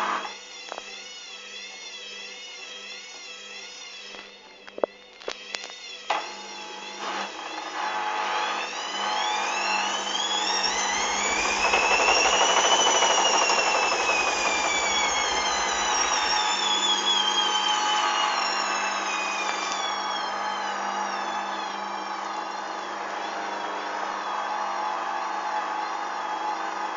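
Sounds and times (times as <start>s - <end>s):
washing machine drum motor whine: 5.4s - 26.9s.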